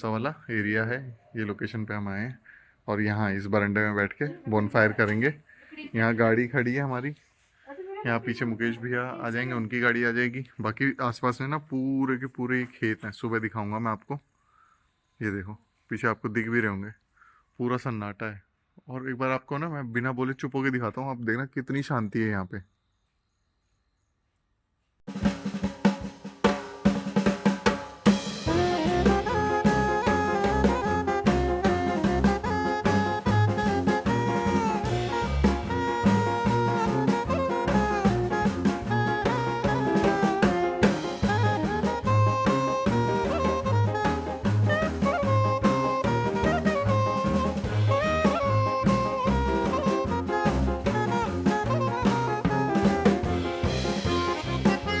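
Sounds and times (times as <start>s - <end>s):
drum hits: 25.1s - 55.0s
music with melody and bass: 25.2s - 55.0s.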